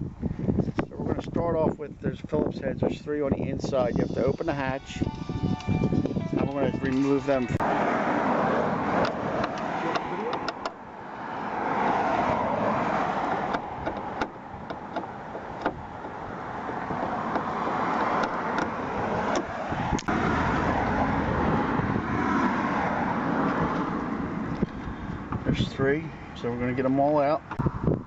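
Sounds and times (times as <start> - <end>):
road traffic noise: 3.7 - 28.0.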